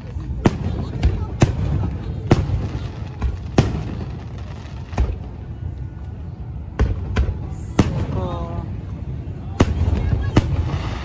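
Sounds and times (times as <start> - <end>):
continuous low rumble: 0.0 - 11.0.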